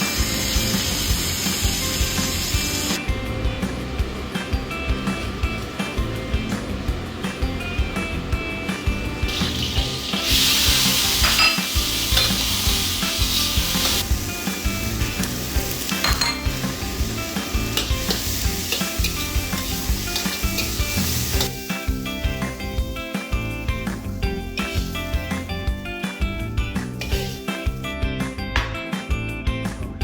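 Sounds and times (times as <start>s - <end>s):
food sizzling in a pan: 0.0s - 3.0s, 8.7s - 27.9s.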